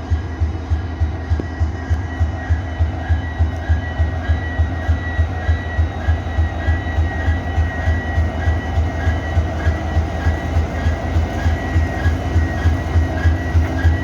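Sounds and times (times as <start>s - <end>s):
diesel locomotive engine running: 0.0s - 14.0s
high engine whine: 0.0s - 14.0s.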